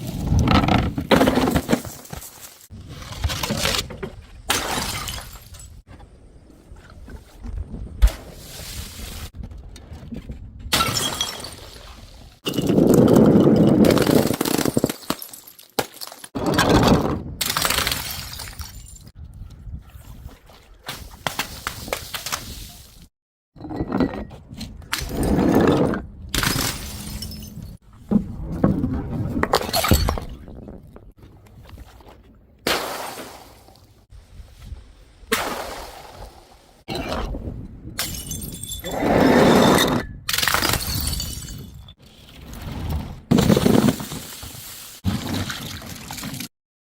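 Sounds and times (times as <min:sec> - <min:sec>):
glass bottles smashing: 0:04.5 - 0:05.8, 0:10.8 - 0:11.8, 0:12.4 - 0:16.3, 0:26.4 - 0:27.8, 0:38.0 - 0:38.9, 0:40.3 - 0:42.0.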